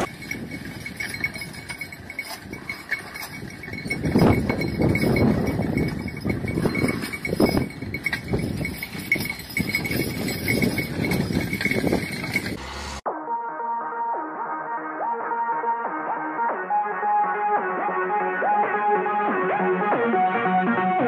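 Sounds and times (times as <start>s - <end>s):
livestock bells jingling: 0.0s - 12.8s.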